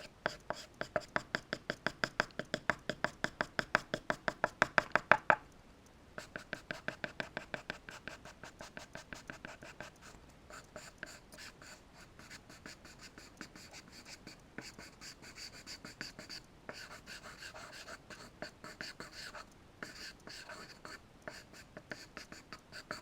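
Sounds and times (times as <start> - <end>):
charcoal scratching on paper: 6.2 - 10.0, 10.8 - 23.0.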